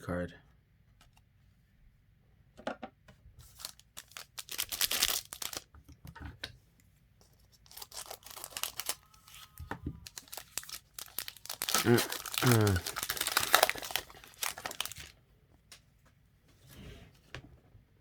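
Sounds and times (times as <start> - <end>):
card pack wrapper tearing: 3.4 - 5.6, 7.7 - 15.1.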